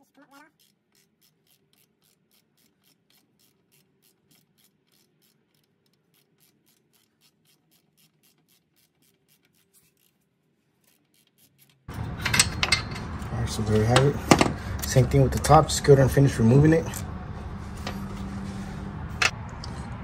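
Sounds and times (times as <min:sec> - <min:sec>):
ratchet wrench clicking: 0:00.4 - 0:10.1, 0:10.8 - 0:14.1.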